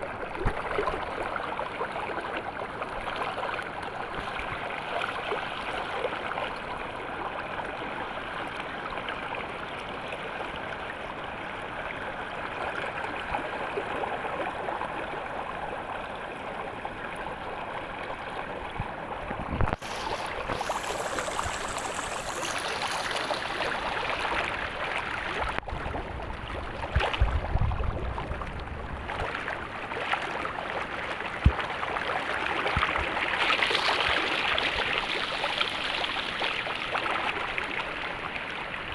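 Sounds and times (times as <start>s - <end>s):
stream flowing: 0.0s - 27.3s, 28.1s - 38.9s.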